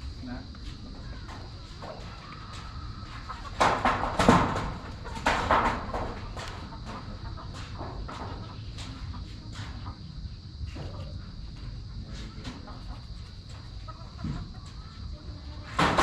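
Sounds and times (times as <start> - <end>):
rooster crowing: 1.1 - 4.0.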